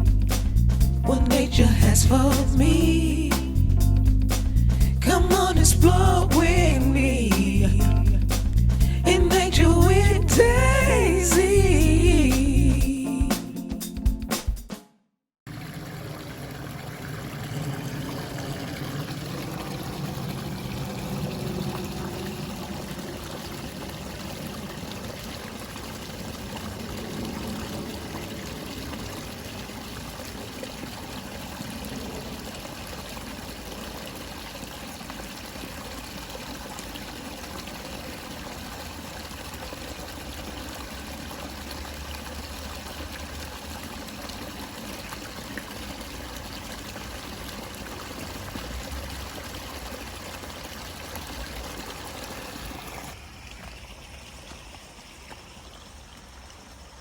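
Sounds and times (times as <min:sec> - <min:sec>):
stream water trickling: 0:15.5 - 0:57.0.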